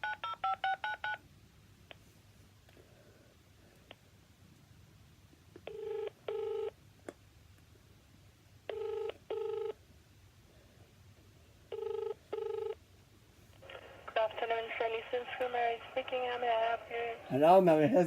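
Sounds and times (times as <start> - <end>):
telephone ringback tone: 0.0 - 1.2, 5.7 - 6.8, 8.7 - 9.8, 11.7 - 12.8.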